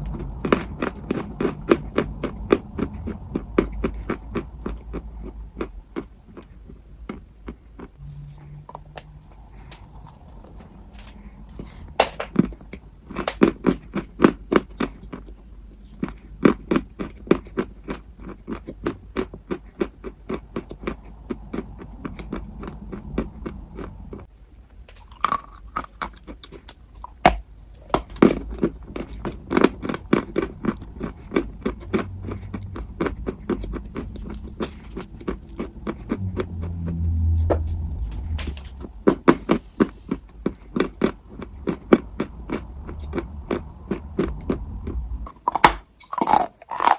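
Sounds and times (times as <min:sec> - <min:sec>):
crunchy chewing: 0:00.0 - 0:46.9
low hum: 0:00.0 - 0:46.9.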